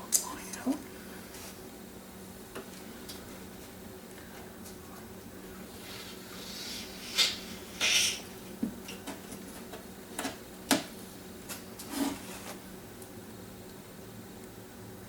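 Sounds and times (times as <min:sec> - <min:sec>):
brief rasping noises: 0:05.9 - 0:08.3.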